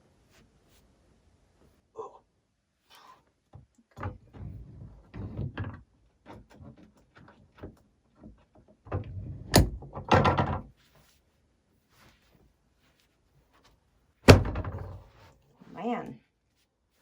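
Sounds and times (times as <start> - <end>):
small knocks and rubbing: 3.5 - 11.2.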